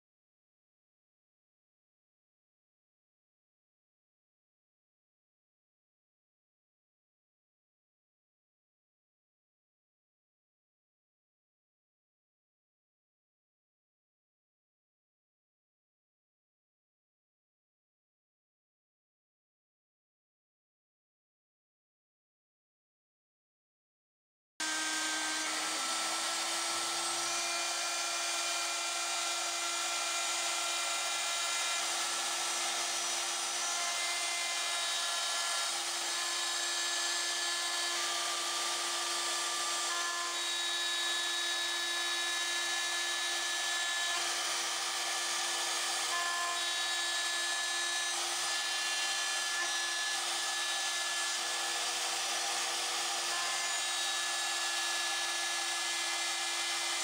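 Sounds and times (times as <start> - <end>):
cutter milling metal hiss: 24.6 - 57.0
router spindle whine: 24.6 - 57.0.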